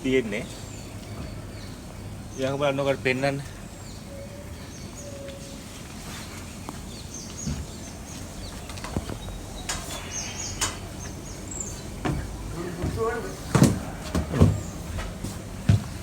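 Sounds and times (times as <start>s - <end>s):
bird calling: 0.1s - 15.0s.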